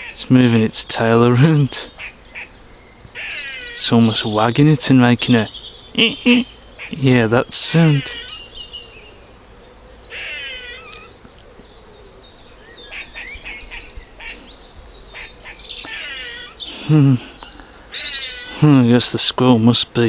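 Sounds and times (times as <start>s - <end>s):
squirrel alarm chirps: 0.0s - 0.6s, 3.1s - 8.8s, 10.0s - 11.6s, 12.7s - 19.1s
harsh squirrel call: 0.0s - 8.6s, 10.0s - 19.3s.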